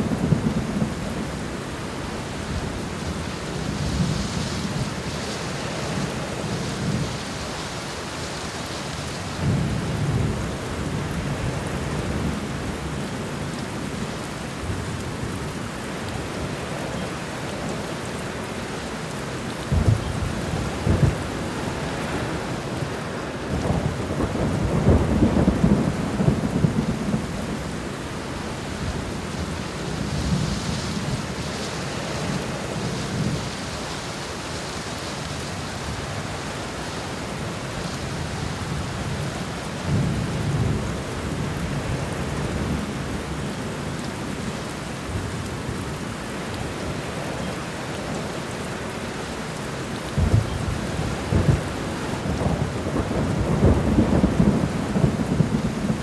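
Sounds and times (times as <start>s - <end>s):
heavy rain hissing: 0.0s - 56.0s
thunder rolling: 19.7s - 22.6s, 23.5s - 27.8s, 50.2s - 56.0s
sharp thunder claps: 50.2s - 56.0s.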